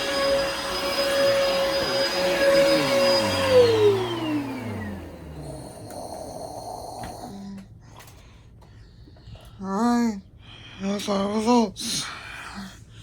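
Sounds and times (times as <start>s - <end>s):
vacuum cleaner motor whine: 0.0s - 6.6s.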